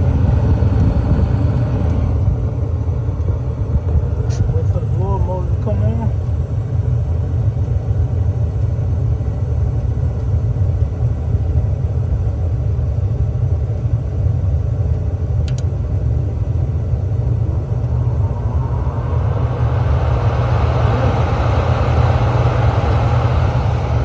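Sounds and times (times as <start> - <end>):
low mechanical rumble: 0.0 - 24.0
brief click: 15.4 - 15.7
hiss: 17.7 - 24.0.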